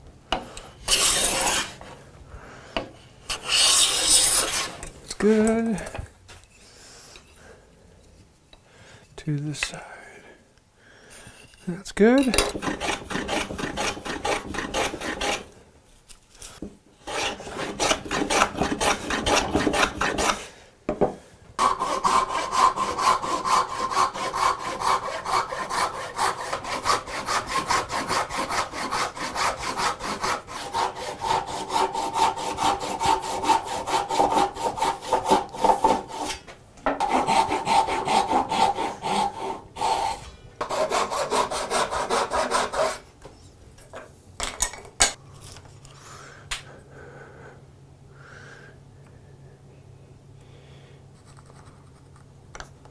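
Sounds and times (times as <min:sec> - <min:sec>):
hand scraping strokes: 0:00.8 - 0:02.0, 0:03.3 - 0:05.5, 0:21.6 - 0:36.4.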